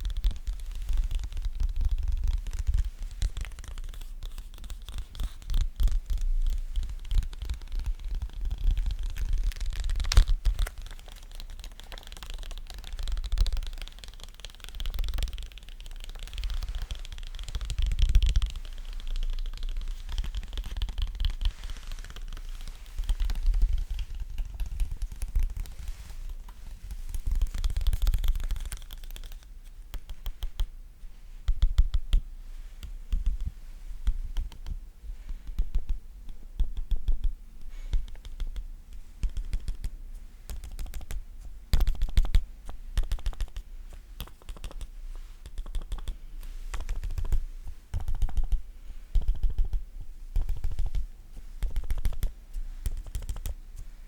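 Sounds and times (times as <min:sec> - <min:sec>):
fingertip tapping and clicking: 0:00.0 - 0:30.7, 0:32.8 - 0:39.9, 0:40.5 - 0:53.6.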